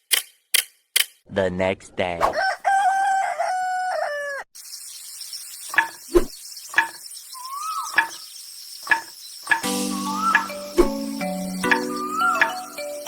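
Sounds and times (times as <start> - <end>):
rooster crowing: 2.3 - 4.5
rising-then-falling bird call: 7.4 - 8.3, 9.8 - 12.8.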